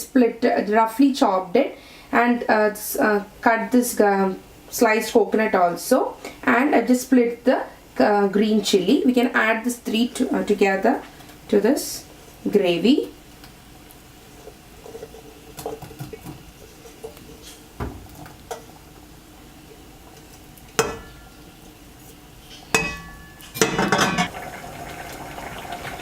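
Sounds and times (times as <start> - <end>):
utensil scraping stir: 14.3 - 17.7
metal utensils clinking on pan: 20.8 - 21.4, 22.7 - 24.3.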